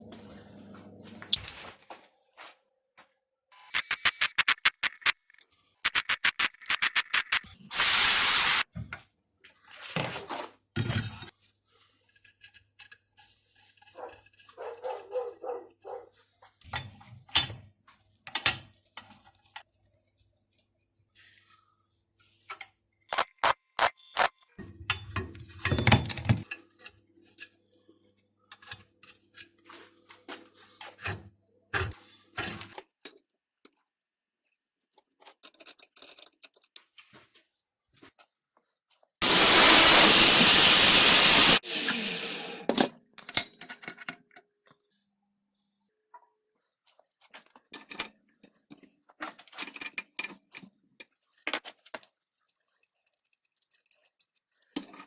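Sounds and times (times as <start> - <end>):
metal parts clicking and knocking: 3.6 - 8.6, 23.1 - 24.3, 34.9 - 36.8
angle grinder running: 5.9 - 8.6, 39.2 - 42.7
grinder motor winding down: 5.9 - 8.6, 39.2 - 42.7.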